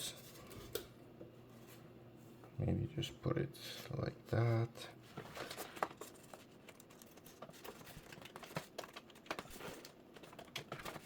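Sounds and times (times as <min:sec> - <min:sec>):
cables clicking and rustling: 0:05.1 - 0:11.0.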